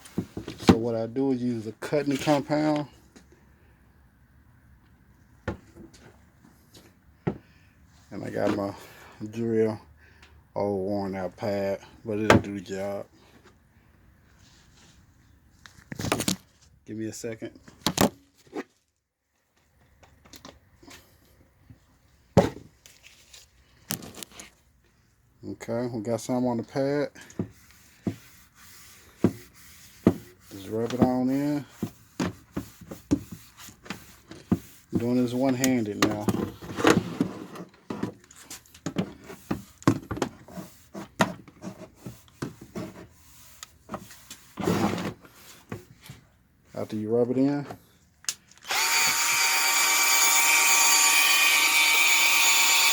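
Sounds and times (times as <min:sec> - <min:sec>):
polishing pad rubbing plastic: 0:27.6 - 0:35.6.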